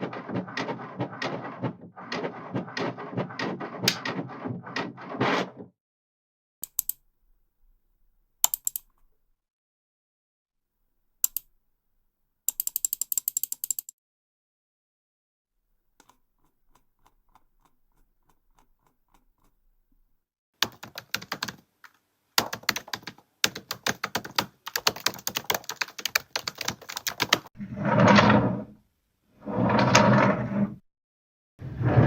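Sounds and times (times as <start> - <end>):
desk drawer sliding: 0.0 - 5.7, 27.6 - 28.7, 29.4 - 30.8, 31.6 - 32.0
typing on a keyboard: 8.4 - 8.9, 12.5 - 13.9, 20.6 - 27.5.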